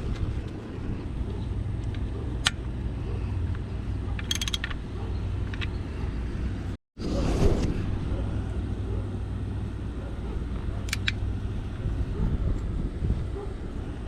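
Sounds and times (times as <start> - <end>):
wind rumble on microphone: 0.0 - 14.0
hand tools clicking on metal: 3.5 - 4.8.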